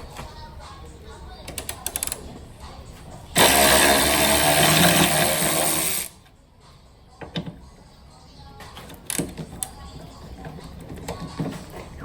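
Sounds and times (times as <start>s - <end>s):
power tool running: 3.4s - 6.1s.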